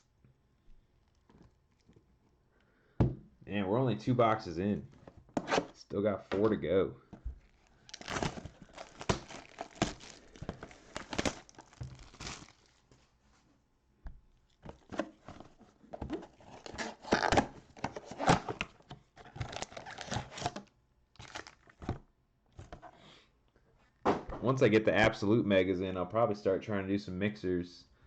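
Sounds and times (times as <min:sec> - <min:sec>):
wrappers tearing and crinkling: 0:07.4 - 0:12.8, 0:19.3 - 0:20.6, 0:21.2 - 0:21.8.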